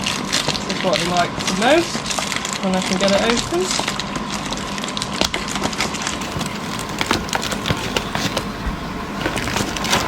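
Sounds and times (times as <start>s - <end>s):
plastic bag crinkling: 0.0s - 10.0s
steady hum: 6.2s - 10.0s.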